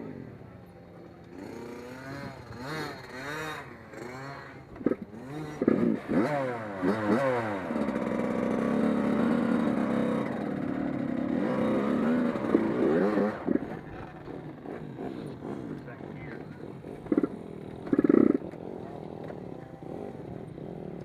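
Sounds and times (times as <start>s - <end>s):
race car engines revving and passing: 0.0s - 21.0s.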